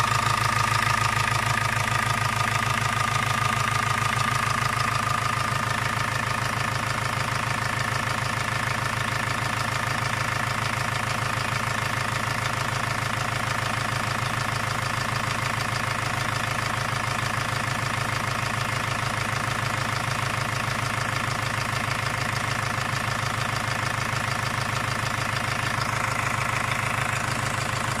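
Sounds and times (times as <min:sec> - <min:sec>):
diesel engine idling: 0:00.0 - 0:28.0
fast even engine knock: 0:09.3 - 0:28.0.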